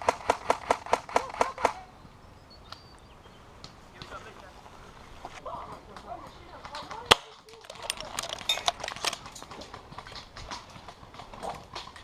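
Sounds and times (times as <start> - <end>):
airsoft guns popping: 5.9 - 12.0.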